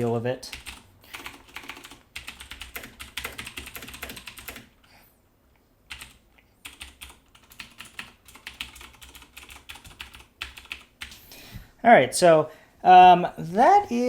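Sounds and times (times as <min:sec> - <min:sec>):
mechanical keyboard typing: 0:00.0 - 0:04.9, 0:05.9 - 0:11.2.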